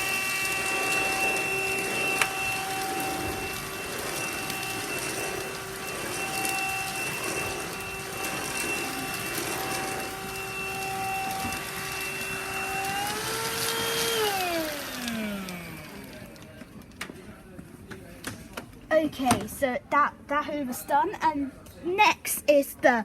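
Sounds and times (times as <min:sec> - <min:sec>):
handheld vacuum cleaner whining: 0:00.0 - 0:16.6.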